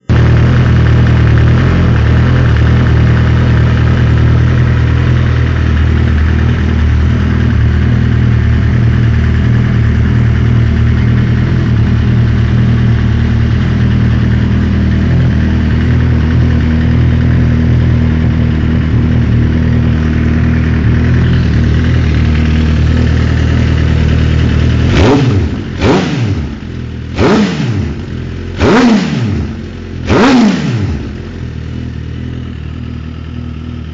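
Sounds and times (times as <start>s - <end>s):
motorcycle engine revving: 0.0s - 33.9s.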